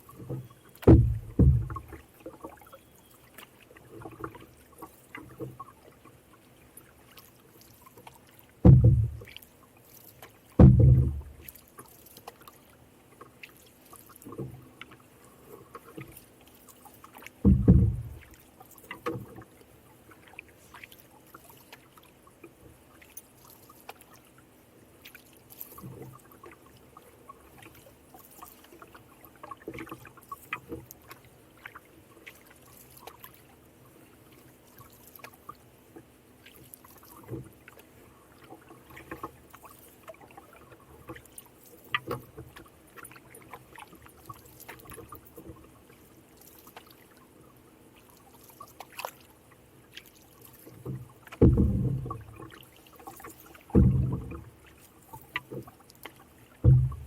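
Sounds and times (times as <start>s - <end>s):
paddle strokes splashing in water: 0.0s - 57.0s
soft knocks against hull: 0.1s - 2.6s, 8.6s - 9.4s, 10.6s - 11.5s, 17.4s - 19.5s, 50.7s - 54.7s, 55.3s - 57.0s
loud low thump: 0.9s - 1.8s, 8.7s - 9.2s, 10.6s - 11.3s, 17.5s - 18.2s, 53.8s - 54.3s, 56.7s - 57.0s.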